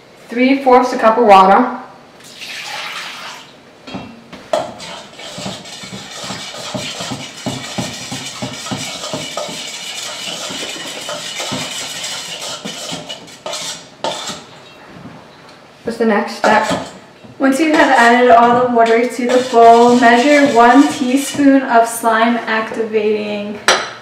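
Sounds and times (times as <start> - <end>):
utensil stirring and scraping bowl: 4.5 - 14.7, 16.3 - 21.6.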